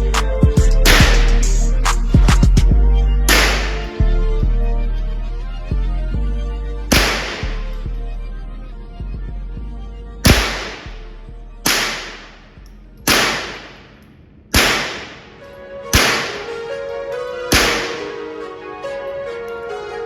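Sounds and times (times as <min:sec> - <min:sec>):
background music: 0:00.0 - 0:20.0
rifle shots: 0:00.8 - 0:01.4, 0:03.3 - 0:03.9, 0:06.9 - 0:07.7, 0:10.2 - 0:11.0, 0:11.6 - 0:12.4, 0:13.0 - 0:16.7, 0:17.5 - 0:18.4.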